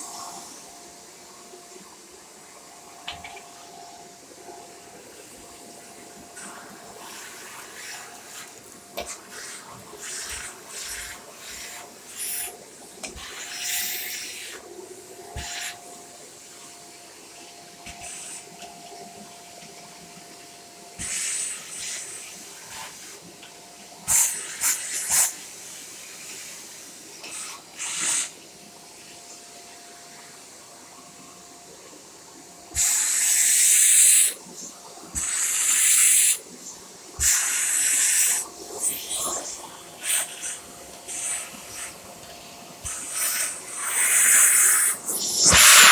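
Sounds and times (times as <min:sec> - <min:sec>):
vacuum cleaner whine: 0:00.0 - 0:45.9
rushing air hiss bursts: 0:09.1 - 0:12.6, 0:13.2 - 0:14.6, 0:32.8 - 0:34.4, 0:35.2 - 0:36.4, 0:37.2 - 0:42.1, 0:42.8 - 0:45.9.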